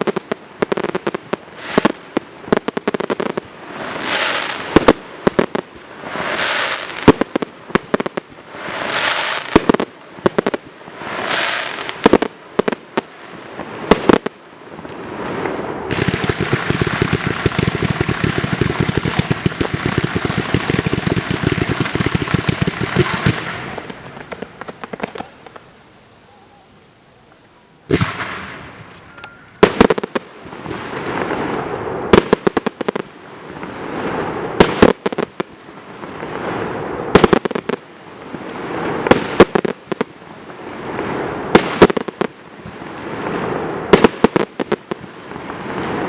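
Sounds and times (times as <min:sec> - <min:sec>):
firework bangs: 0:00.0 - 0:46.0
firework whooshes: 0:14.8 - 0:30.1
fast crackling of small reports: 0:16.1 - 0:26.5.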